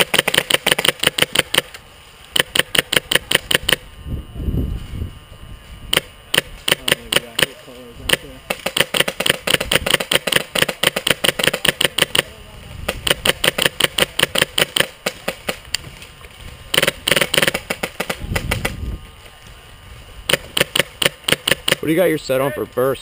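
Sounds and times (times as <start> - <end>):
airsoft guns firing full auto: 0.0 - 1.7, 2.4 - 3.8, 5.9 - 15.6, 16.7 - 18.8, 20.3 - 22.1.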